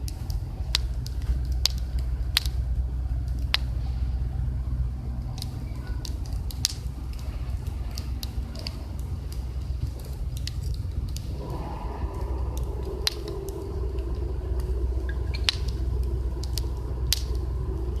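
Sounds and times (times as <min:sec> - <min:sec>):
campfire wood crackling and popping: 0:00.0 - 0:18.0
low rumble: 0:00.0 - 0:18.0
steady hum: 0:00.0 - 0:18.0.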